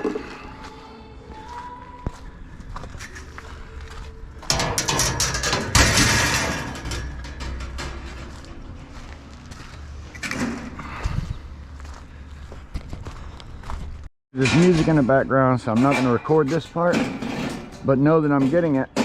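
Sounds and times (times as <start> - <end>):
metal pieces clattering: 4.5 - 8.6
heavy metallic crash ringing: 4.5 - 8.7.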